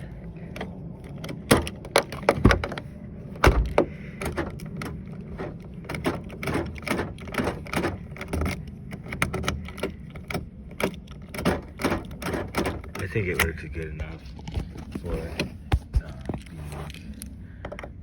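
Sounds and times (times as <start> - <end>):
car door lock clicks and clunks: 0.5 - 13.6.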